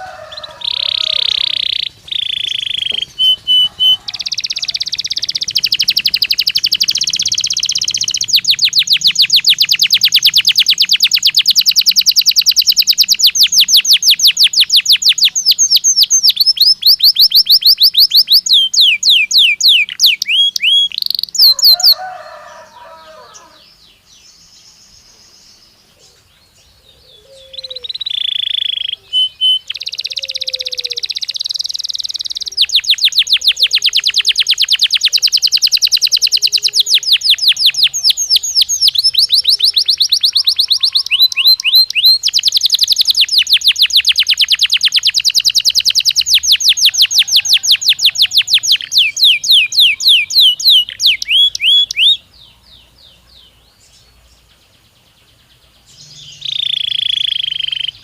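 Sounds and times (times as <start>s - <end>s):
canary singing trills: 0.0s - 58.0s.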